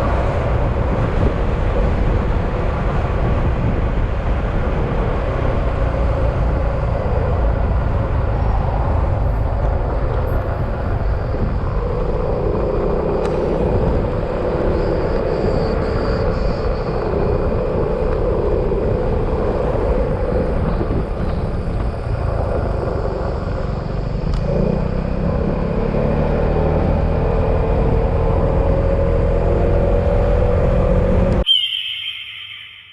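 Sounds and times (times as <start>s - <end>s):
wind noise: 0.0s - 26.0s
road rumble: 0.0s - 31.5s.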